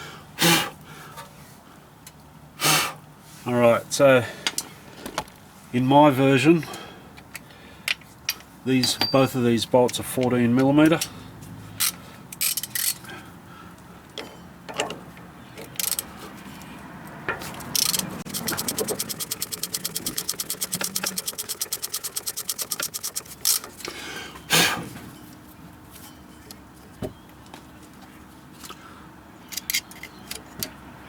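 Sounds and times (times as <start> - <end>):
ratchet wrench clicking: 12.4 - 13.0, 17.6 - 23.7.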